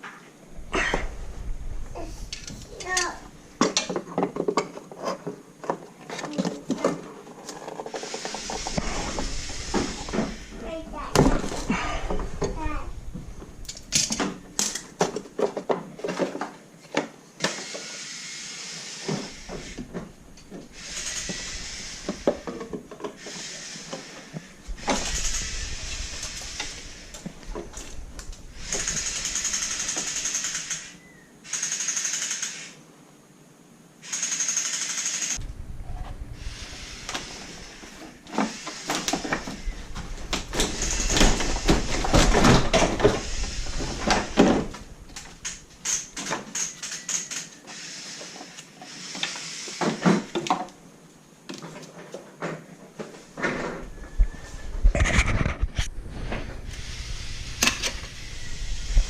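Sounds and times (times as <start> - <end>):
small power tool running: 17.6 - 22.6, 23.2 - 30.9, 34.1 - 46.1, 56.7 - 59.0.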